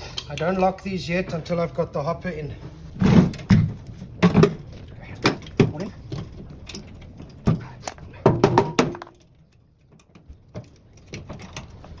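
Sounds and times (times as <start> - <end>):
metal parts knocking and clanking: 3.0 - 9.3.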